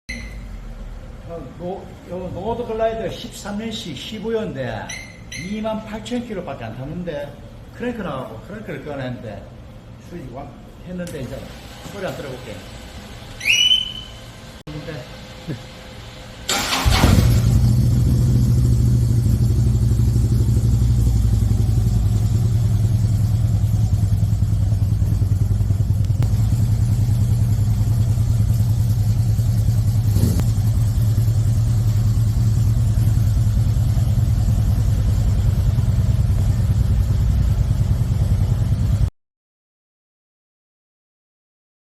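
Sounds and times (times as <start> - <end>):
motorcycle engine idling: 16.6 - 39.1.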